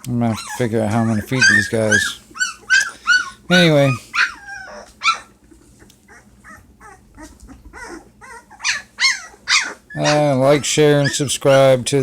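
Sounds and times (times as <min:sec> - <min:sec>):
puppies whining and squealing: 0:00.0 - 0:12.0.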